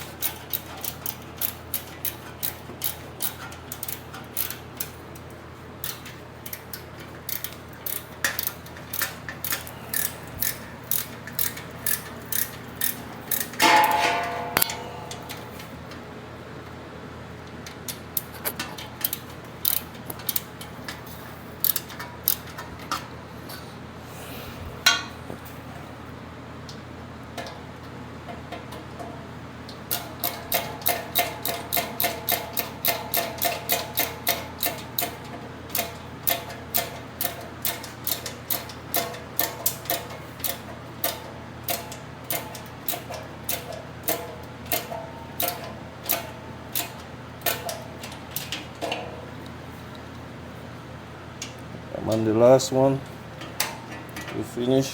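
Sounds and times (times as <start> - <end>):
ratchet wrench clicking: 0.2 - 4.9, 5.8 - 13.6, 19.0 - 20.5, 21.6 - 22.6, 29.9 - 47.8.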